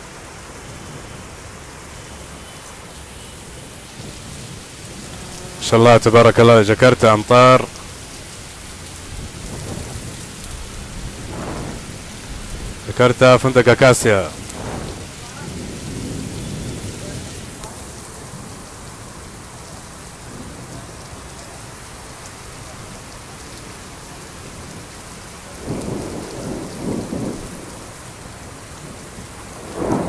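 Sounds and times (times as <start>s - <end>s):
heavy rain pouring: 0.0s - 30.0s.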